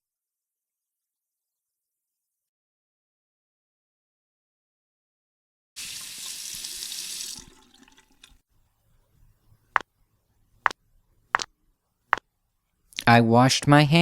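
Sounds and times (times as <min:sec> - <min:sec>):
water running from a tap: 0:05.8 - 0:08.4.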